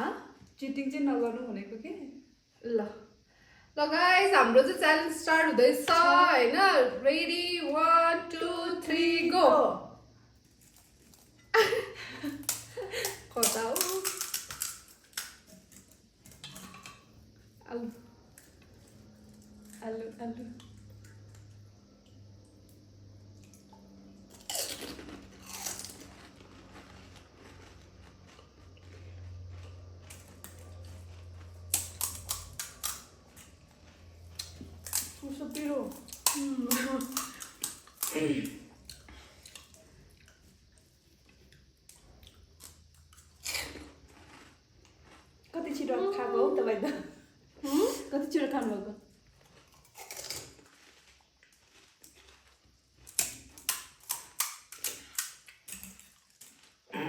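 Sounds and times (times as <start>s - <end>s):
crisp shells crunching when chewed: 10.4s - 11.6s, 12.2s - 17.1s, 23.3s - 45.6s, 49.1s - 56.9s
crisp shells crunching: 12.4s - 16.1s, 24.3s - 28.6s, 49.6s - 56.9s.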